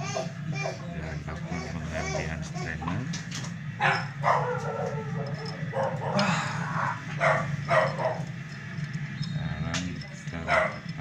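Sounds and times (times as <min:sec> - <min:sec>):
low machine hum: 0:00.0 - 0:11.0
dog barking: 0:03.8 - 0:06.2, 0:06.8 - 0:08.3, 0:10.4 - 0:10.9.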